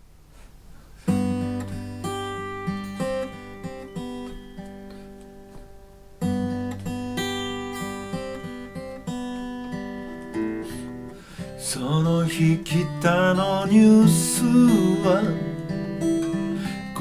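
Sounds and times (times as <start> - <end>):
acoustic guitar strumming and picking: 1.0 - 17.0.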